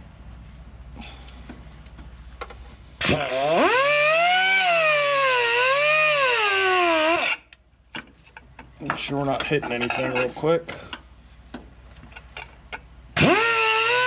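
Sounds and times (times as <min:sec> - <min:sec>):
cut-off wheel cutting metal: 0:03.0 - 0:07.5, 0:13.2 - 0:14.0.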